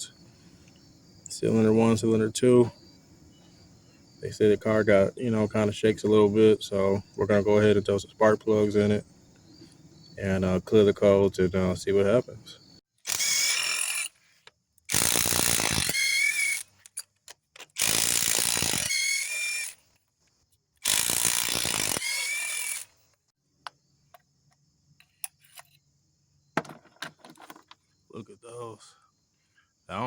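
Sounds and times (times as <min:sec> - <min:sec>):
ratchet wrench whirring: 0:13.0 - 0:14.2, 0:14.9 - 0:17.0, 0:17.6 - 0:19.8, 0:20.8 - 0:22.9.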